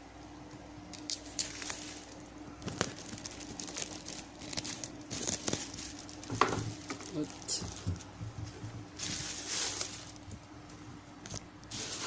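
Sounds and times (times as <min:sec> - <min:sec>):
plastic packaging crinkling: 0:01.0 - 0:08.1, 0:08.9 - 0:10.5, 0:11.2 - 0:12.0.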